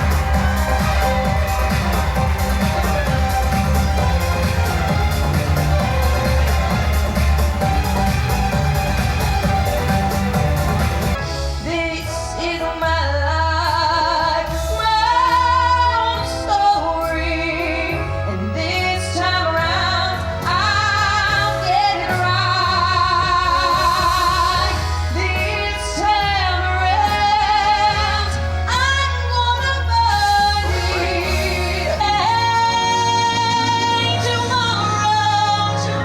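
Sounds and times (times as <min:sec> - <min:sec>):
instrumental accompaniment with bass: 0:00.0 - 0:36.0
woman singing with vibrato: 0:11.6 - 0:36.0.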